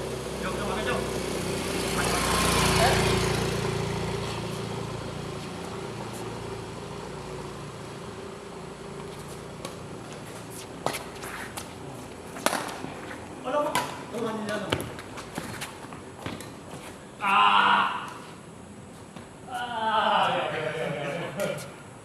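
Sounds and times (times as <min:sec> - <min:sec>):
small engine running: 0:00.0 - 0:09.3.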